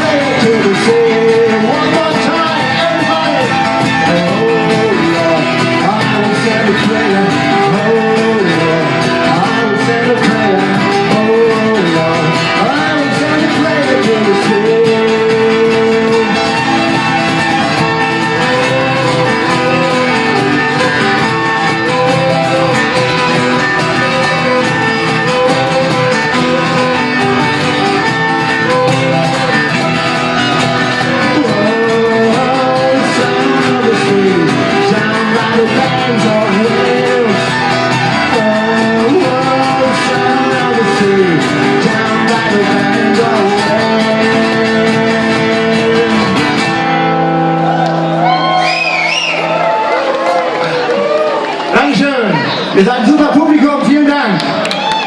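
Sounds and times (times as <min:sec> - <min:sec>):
live band playing guitars: 0:00.0 - 0:55.0
sliding guitar lead line: 0:00.0 - 0:55.0.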